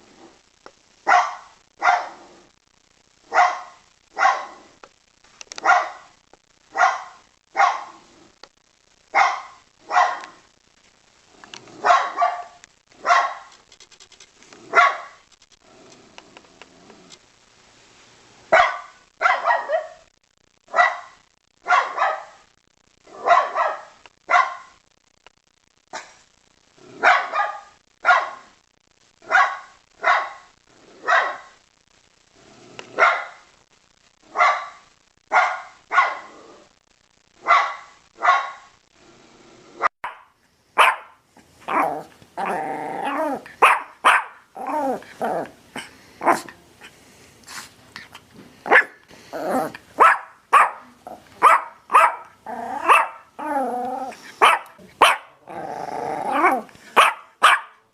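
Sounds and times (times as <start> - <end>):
dog barking: 1.0 - 2.2, 3.3 - 4.6, 5.6 - 8.0, 9.1 - 10.4, 11.8 - 13.5, 14.7 - 15.2, 18.5 - 20.1, 20.7 - 22.4, 23.1 - 24.7, 27.0 - 28.5, 29.2 - 31.6, 32.9 - 33.5, 34.3 - 36.3, 37.4 - 38.7, 40.0 - 44.5, 45.4 - 46.6, 48.7 - 49.0, 49.6 - 53.3, 54.1 - 55.4, 56.3 - 57.9.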